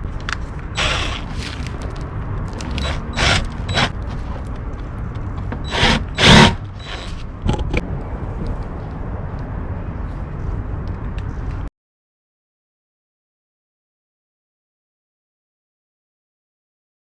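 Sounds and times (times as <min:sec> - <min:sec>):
steady low rumble: 0:00.0 - 0:11.7
power drill bursts: 0:00.8 - 0:01.3, 0:02.8 - 0:04.0, 0:05.6 - 0:07.2.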